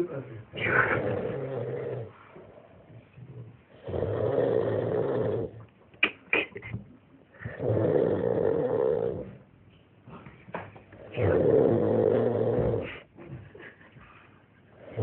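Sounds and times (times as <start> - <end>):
person snoring: 0.6 - 2.1, 7.4 - 9.3, 11.0 - 13.0.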